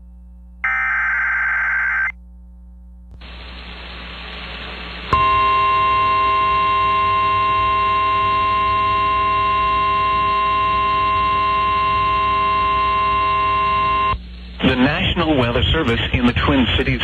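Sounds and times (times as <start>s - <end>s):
radio receiver hiss: 0.6s - 2.1s, 3.2s - 5.1s
steady alarm tone: 0.6s - 2.1s.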